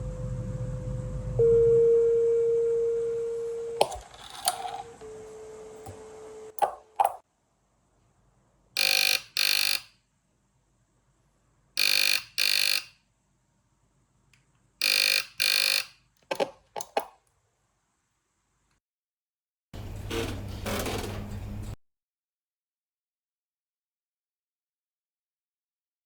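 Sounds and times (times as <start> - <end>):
telephone dial tone: 2.7 - 7.0, 8.8 - 9.9, 14.8 - 15.9
telephone buzzer ringing: 8.8 - 9.9, 11.8 - 13.0, 14.8 - 16.0.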